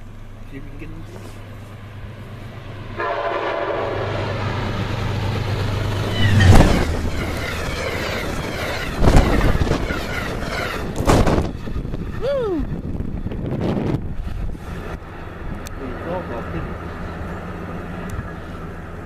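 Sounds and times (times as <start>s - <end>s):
diesel engine low rumble: 0.0s - 19.0s
train rushing by: 1.8s - 19.0s
locomotive horn chord: 3.0s - 4.2s.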